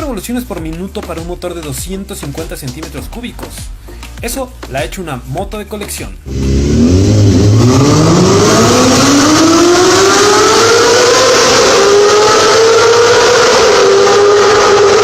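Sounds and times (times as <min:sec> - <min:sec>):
motorcycle engine revving: 0:06.3 - 0:15.0.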